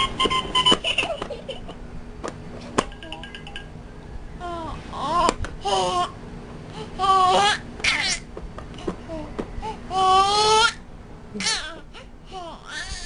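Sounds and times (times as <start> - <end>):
baby crying: 7.0 - 8.1, 9.9 - 10.8, 11.4 - 13.0.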